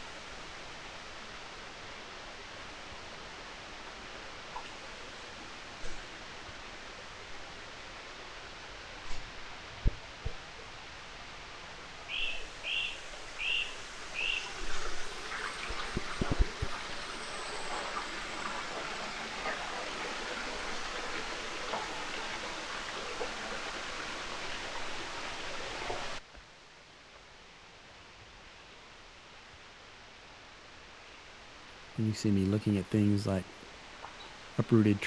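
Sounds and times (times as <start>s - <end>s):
running water rushing: 0.0s - 26.2s, 31.2s - 35.0s
bird chirping: 12.1s - 14.6s
outdoor hush: 31.5s - 35.0s.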